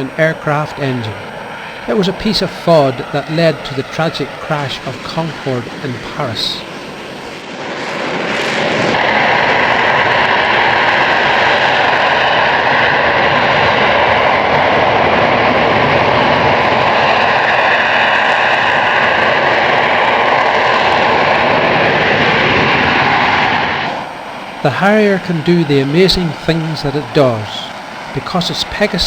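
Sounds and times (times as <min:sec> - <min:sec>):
high whine: 0:00.0 - 0:29.0
jet engine roar: 0:00.0 - 0:29.0.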